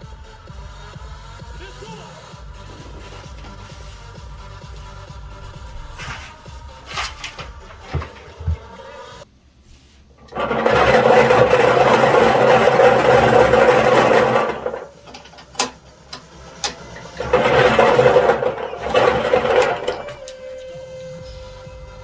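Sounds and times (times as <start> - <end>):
lottery machine motor humming: 0.0 - 9.3, 10.2 - 22.0
balls tumbling and rattling: 2.6 - 9.0, 10.0 - 20.6.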